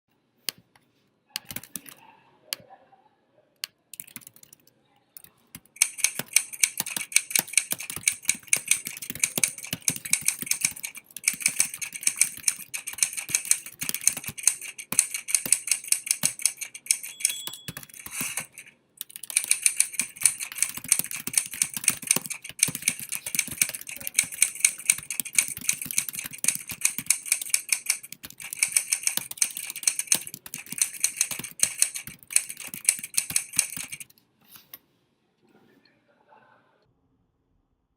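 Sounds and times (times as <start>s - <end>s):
fast typing on keyboard: 1.4s - 2.0s, 4.0s - 4.7s, 5.6s - 34.1s.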